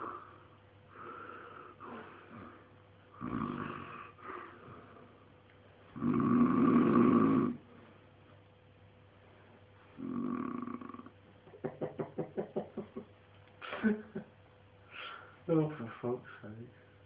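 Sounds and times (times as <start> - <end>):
man snoring: 1.0 - 4.7, 6.0 - 7.7, 10.0 - 11.1.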